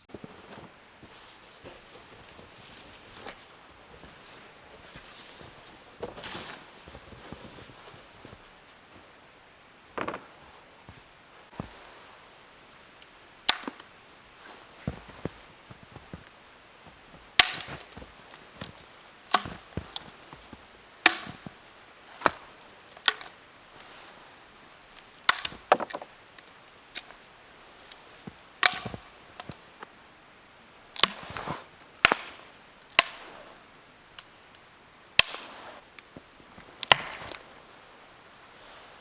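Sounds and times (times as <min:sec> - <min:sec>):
wood being chopped: 0:10.0 - 0:10.3, 0:13.5 - 0:13.9, 0:17.4 - 0:20.2, 0:21.0 - 0:21.5, 0:22.2 - 0:23.3, 0:25.2 - 0:26.1, 0:28.6 - 0:29.6, 0:31.0 - 0:33.3, 0:35.2 - 0:35.5, 0:36.8 - 0:37.4.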